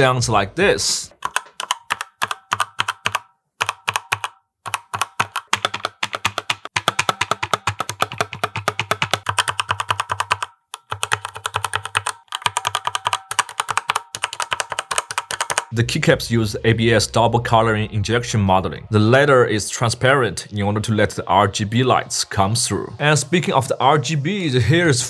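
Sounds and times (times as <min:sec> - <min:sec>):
mechanical keyboard typing: 0:01.2 - 0:15.7.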